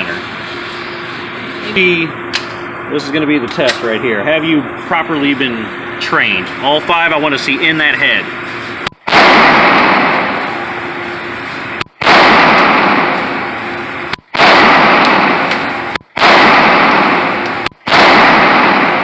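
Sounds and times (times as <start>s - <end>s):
pistol shots echoing indoors: 9.1s - 19.0s.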